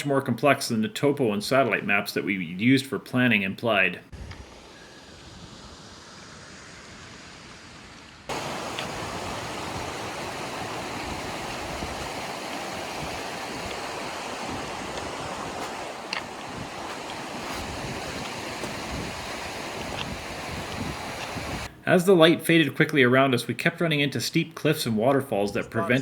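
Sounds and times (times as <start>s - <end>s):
stream rushing: 4.2s - 21.7s.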